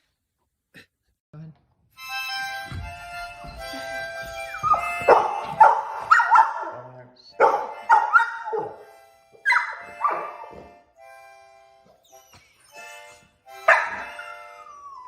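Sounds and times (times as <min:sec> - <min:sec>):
music with held notes: 0:01.9 - 0:06.2, 0:07.3 - 0:15.0
dog barking: 0:04.7 - 0:08.8, 0:09.4 - 0:10.7, 0:13.6 - 0:14.4.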